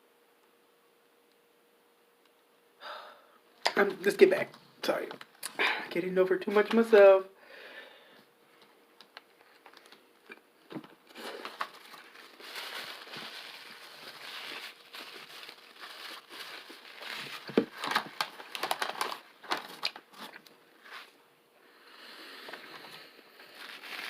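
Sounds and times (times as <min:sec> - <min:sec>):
paper wrapper crinkling: 0:09.0 - 0:10.1, 0:10.8 - 0:21.2, 0:22.5 - 0:24.0.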